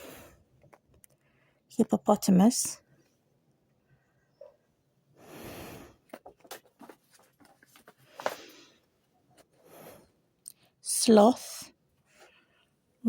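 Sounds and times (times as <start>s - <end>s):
paper pages rustling: 6.1s - 8.7s.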